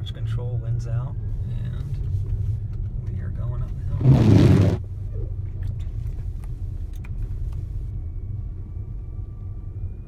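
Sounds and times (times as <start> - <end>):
car driving rumble: 1.8 - 7.5.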